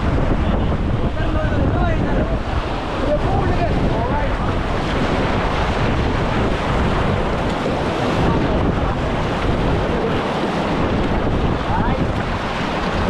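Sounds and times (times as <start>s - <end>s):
river water rushing: 0.0s - 13.0s
wind buffeting microphone: 0.0s - 13.0s.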